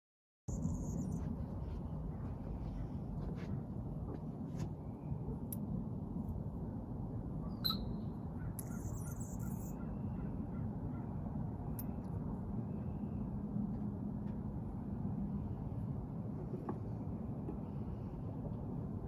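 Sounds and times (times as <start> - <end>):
squeaks and clicks: 8.6 - 9.7.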